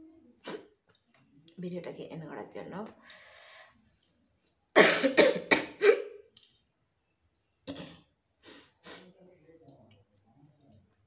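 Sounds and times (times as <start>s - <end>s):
person coughing: 4.8s - 6.2s.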